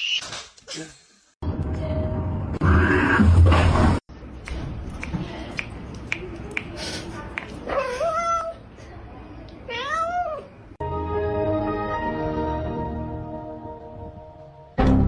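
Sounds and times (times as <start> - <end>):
cat meowing: 9.7 - 10.5.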